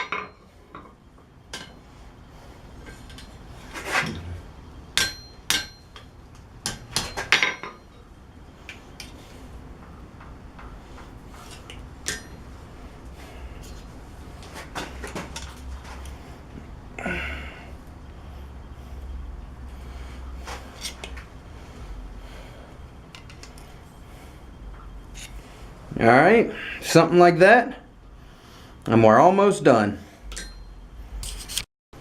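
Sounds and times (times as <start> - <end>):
hammer striking steel on anvil: 5.0 - 7.8, 12.0 - 12.4, 30.3 - 30.7.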